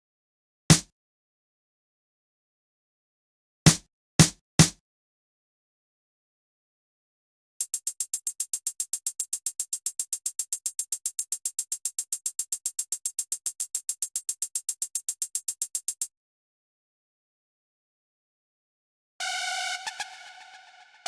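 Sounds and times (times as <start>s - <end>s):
electronic percussion ticks: 7.6s - 16.1s.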